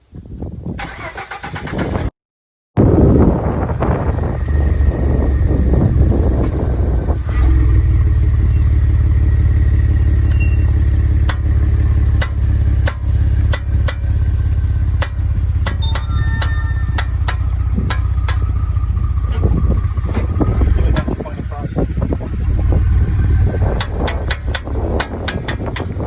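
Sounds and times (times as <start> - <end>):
pickup truck engine running: 2.8 - 26.0
sharp irregular clicks: 12.2 - 18.5, 23.8 - 26.0.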